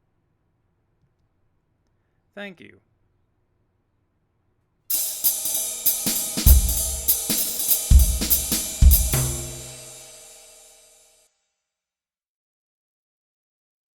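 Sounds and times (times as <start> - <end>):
heavy bass drum hits: 4.9 - 10.5
drum kit and cymbals jingle: 4.9 - 10.9.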